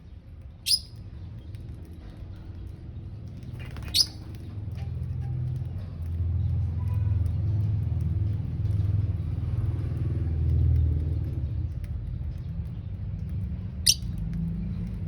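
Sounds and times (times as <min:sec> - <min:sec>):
lovebirds chirping: 0:00.6 - 0:01.0, 0:03.6 - 0:04.4, 0:13.8 - 0:14.2.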